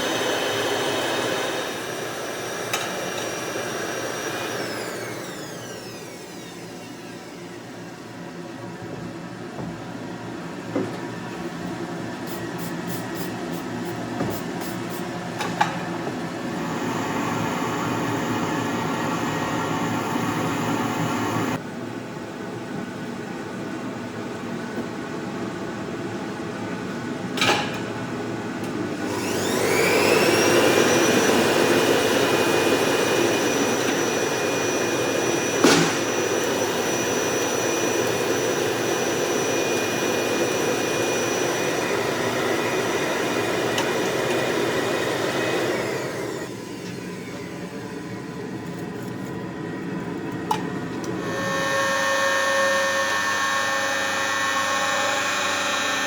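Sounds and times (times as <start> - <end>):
electric grinder grinding steel: 51.2 - 56.0.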